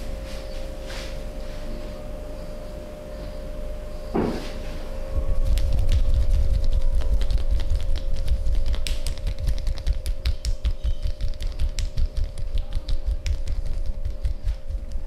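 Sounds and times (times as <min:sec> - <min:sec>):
hands tapping and patting on body: 0:05.5 - 0:15.0.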